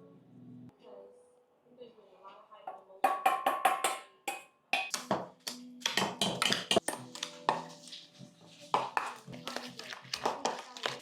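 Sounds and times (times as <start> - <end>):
background music: 0.0 - 1.8, 3.7 - 11.0
dishes and utensils clinking: 3.1 - 11.0.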